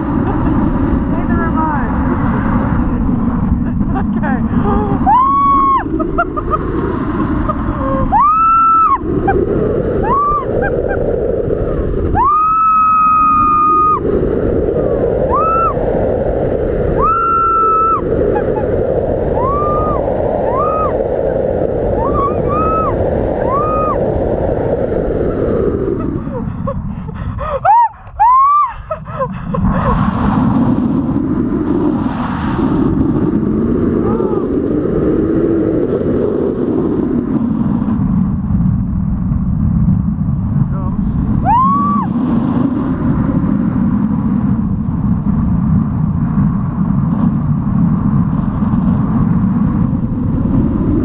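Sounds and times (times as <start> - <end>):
wind rush on microphone: 0.0 - 51.0
woman screaming: 5.0 - 5.9, 7.8 - 9.0, 27.4 - 29.3, 41.4 - 42.1.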